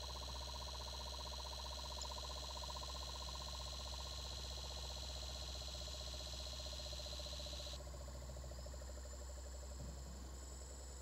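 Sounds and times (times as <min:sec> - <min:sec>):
high steady whine: 0:00.0 - 0:07.8.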